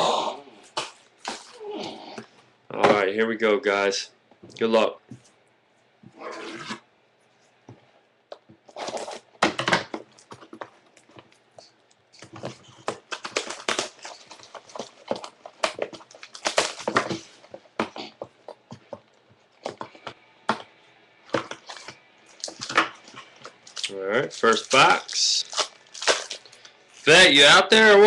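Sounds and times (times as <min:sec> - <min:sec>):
plastic wrapping crinkling and tearing: 0:10.1 - 0:17.5, 0:21.4 - 0:27.3.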